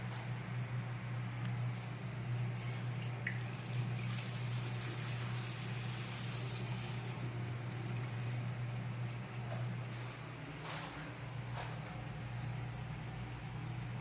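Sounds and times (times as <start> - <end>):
steady low hum: 0.0 - 14.0
water running from a fixture: 2.3 - 11.1.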